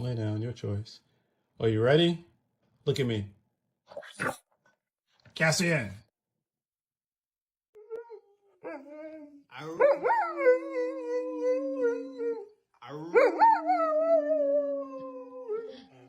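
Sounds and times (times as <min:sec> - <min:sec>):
dog howling: 0:07.8 - 0:16.0.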